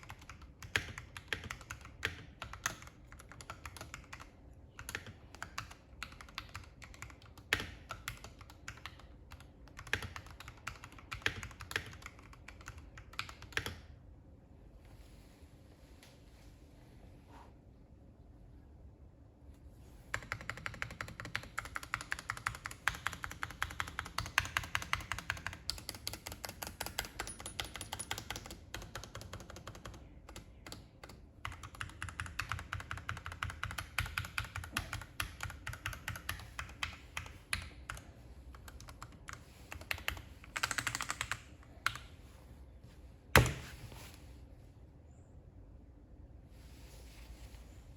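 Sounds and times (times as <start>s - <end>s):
typing on mechanical keyboard: 0.0s - 13.9s, 20.1s - 42.1s.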